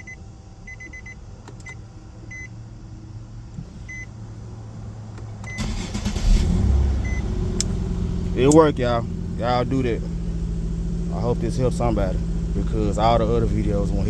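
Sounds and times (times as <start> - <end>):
car warning chime beeping: 0.0 - 2.5, 3.8 - 4.1, 5.4 - 6.3, 7.0 - 7.4
car engine cranking and starting: 3.3 - 14.0.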